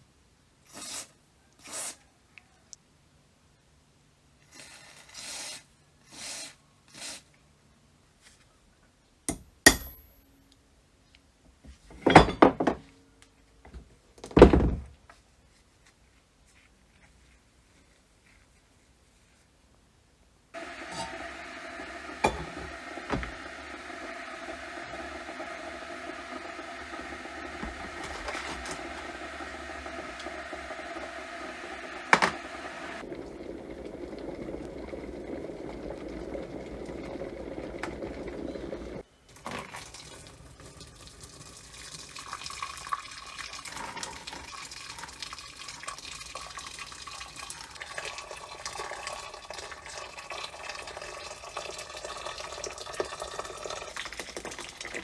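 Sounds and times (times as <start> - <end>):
water running and splashing: 33.0 - 55.0.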